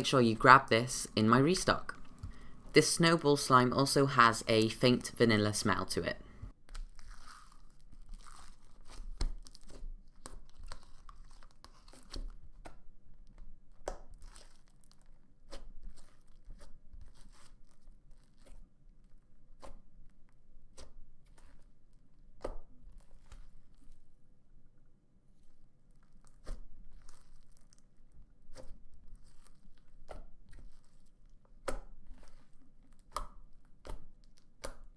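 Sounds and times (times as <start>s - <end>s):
slime stretched and squished: 6.6s - 24.2s, 25.3s - 34.9s.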